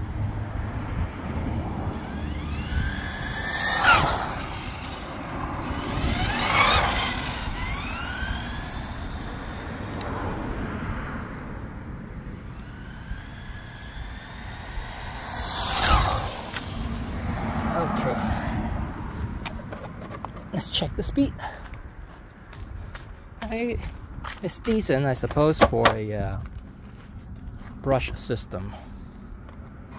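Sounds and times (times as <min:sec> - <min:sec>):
rc car motor whining past: 0:01.8 - 0:11.3, 0:12.3 - 0:18.6.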